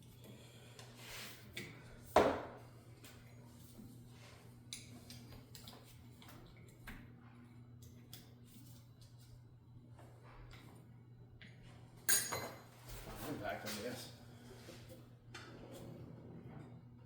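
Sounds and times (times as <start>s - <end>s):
metal tools clinking on metal: 12.1s - 12.7s.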